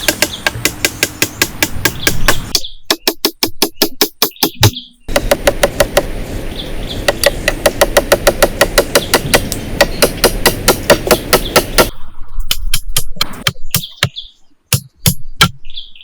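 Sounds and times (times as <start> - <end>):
steady noisy background: 0.0 - 2.9, 3.6 - 13.8
tool striking knocks: 0.0 - 6.2, 7.0 - 11.9.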